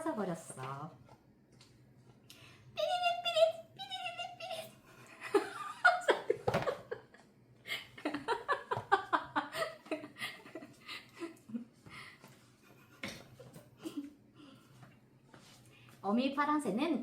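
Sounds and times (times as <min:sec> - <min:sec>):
woman giggling: 0:05.0 - 0:11.8, 0:12.7 - 0:14.5.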